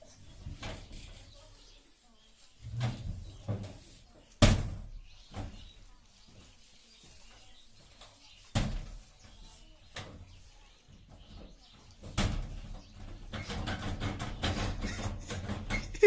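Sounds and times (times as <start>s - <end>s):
knocks and thumps: 11.1s - 16.0s.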